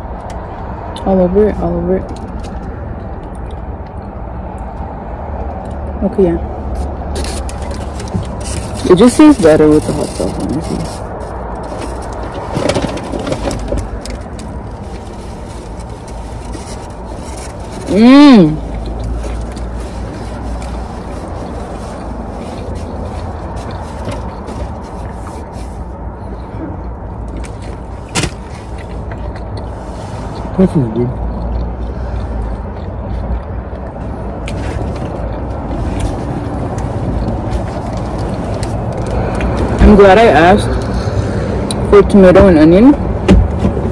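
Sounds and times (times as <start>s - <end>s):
car interior engine rumble: 0.0s - 43.9s
sandwich being handled rustles: 6.6s - 30.6s
soft chewing clicks: 31.2s - 34.6s.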